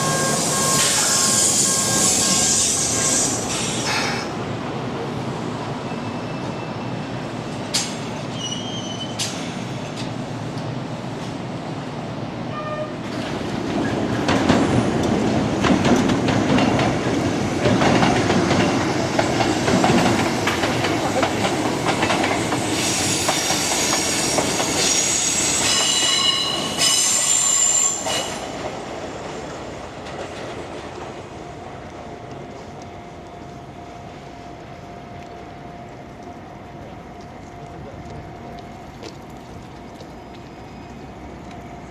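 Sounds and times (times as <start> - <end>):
train wheels squealing: 0.0 - 4.4, 5.7 - 10.0, 19.5 - 29.6
train wheels clattering on rails: 7.5 - 11.4, 12.7 - 33.0.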